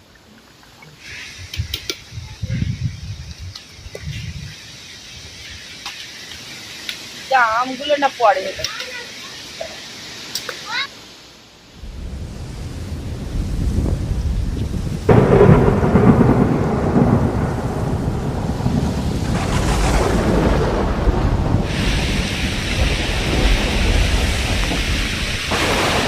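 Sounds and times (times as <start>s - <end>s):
rain hiss: 0.0s - 26.0s
thunder rumbling and crashing: 1.4s - 5.3s, 11.8s - 26.0s.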